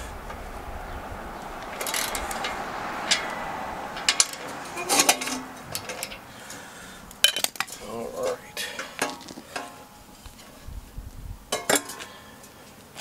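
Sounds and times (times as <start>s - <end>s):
metal tools clinking: 1.8s - 6.2s, 7.2s - 10.0s, 11.5s - 12.1s.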